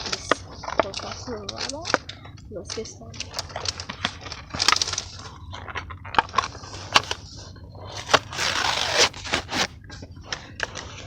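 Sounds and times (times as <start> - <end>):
packaging clicks and crinkles: 3.2 - 7.2, 7.9 - 9.8
packaging tearing: 7.9 - 9.8.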